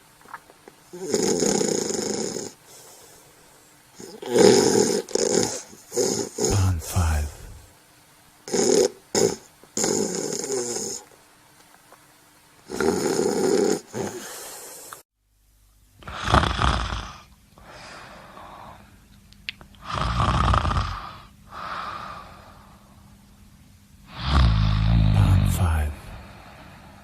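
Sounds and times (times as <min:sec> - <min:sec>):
person snoring: 0:00.9 - 0:03.2, 0:04.0 - 0:07.7, 0:08.5 - 0:11.1, 0:12.7 - 0:15.0, 0:16.0 - 0:18.8, 0:19.8 - 0:22.8, 0:24.1 - 0:27.0.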